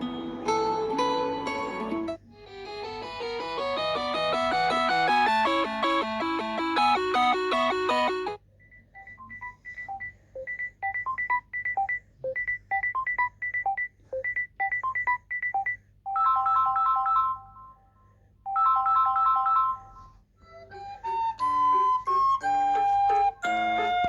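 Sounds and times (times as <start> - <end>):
phone ringtone: 0.0 - 8.4, 16.1 - 17.8, 18.5 - 20.0.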